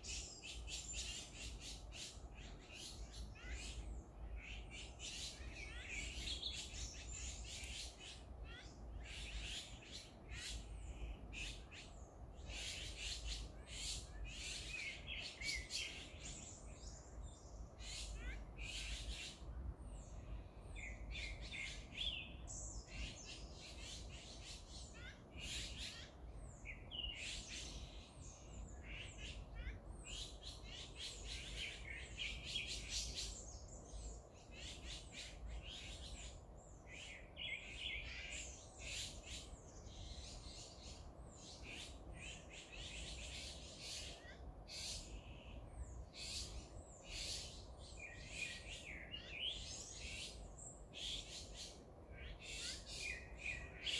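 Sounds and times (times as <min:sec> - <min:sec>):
wild birds chirping: 0:00.0 - 0:53.9.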